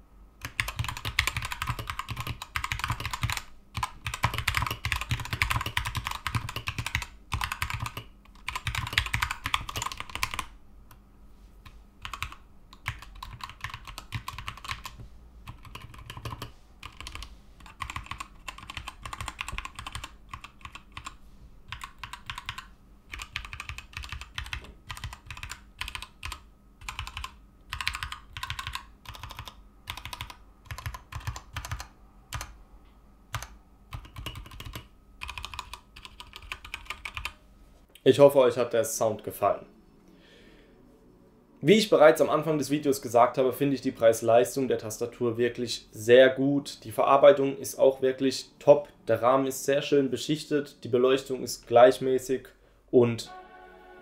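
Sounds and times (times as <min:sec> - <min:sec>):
typing on mechanical keyboard: 0:00.4 - 0:10.5, 0:12.0 - 0:32.5, 0:33.3 - 0:37.4.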